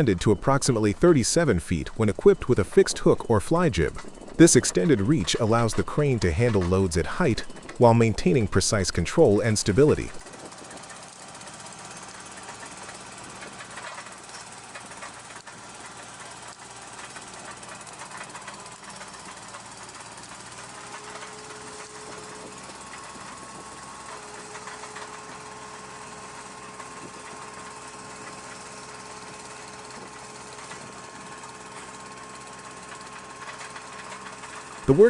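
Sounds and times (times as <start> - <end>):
steady whine: 0.0 - 15.5, 33.4 - 35.0
crane engine and hydraulics running: 0.0 - 35.0.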